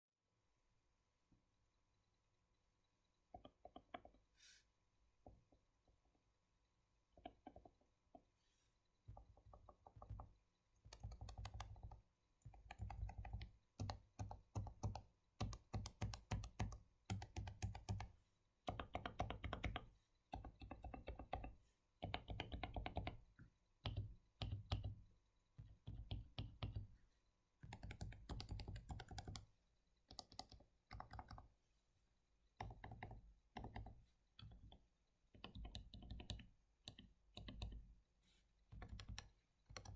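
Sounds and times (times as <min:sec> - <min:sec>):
muted keyboard keystrokes: 0:09.1 - 0:23.2, 0:23.8 - 0:25.0, 0:25.6 - 0:26.9, 0:27.6 - 0:29.5, 0:30.1 - 0:31.5, 0:32.6 - 0:37.8, 0:38.7 - 0:39.9.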